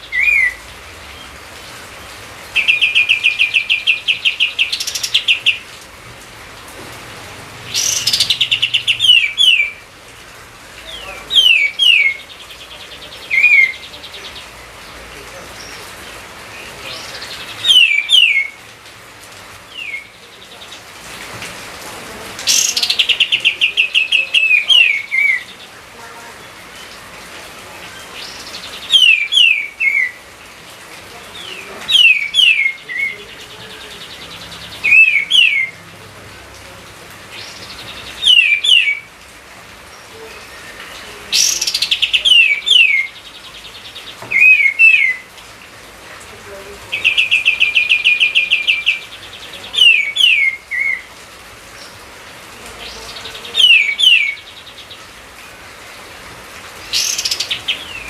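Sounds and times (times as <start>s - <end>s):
songbird whistling: 0.1s - 0.6s, 17.6s - 18.6s, 38.2s - 39.1s, 44.3s - 45.2s.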